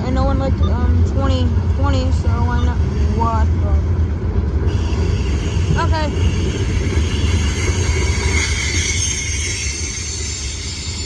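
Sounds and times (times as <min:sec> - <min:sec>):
freight cars rumbling on rails: 0:00.0 - 0:11.0
high wheel squeal: 0:04.7 - 0:11.0.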